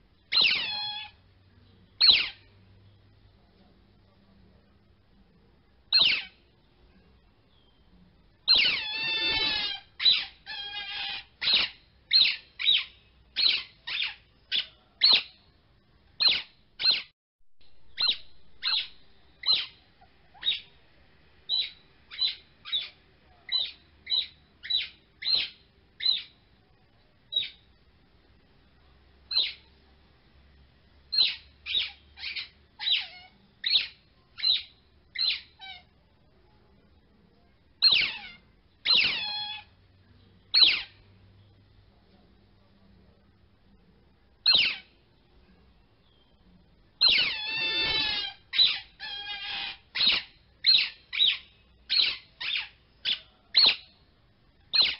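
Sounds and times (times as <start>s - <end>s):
high rising chirps: 47.1s - 48.8s.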